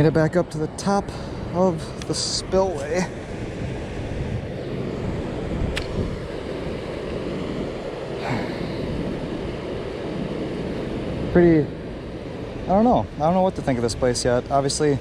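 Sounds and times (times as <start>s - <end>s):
sharp click: 5.7s - 6.0s.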